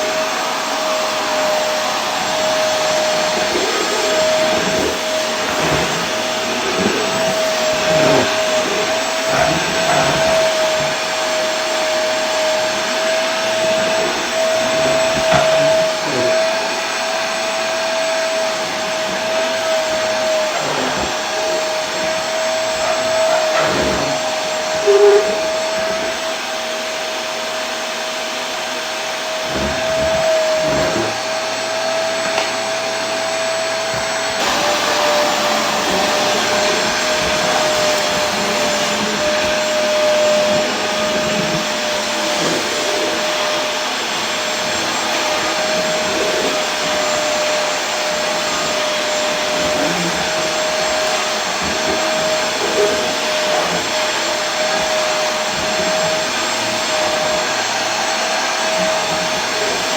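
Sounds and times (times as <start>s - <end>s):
vacuum cleaner motor running: 0.0s - 59.9s.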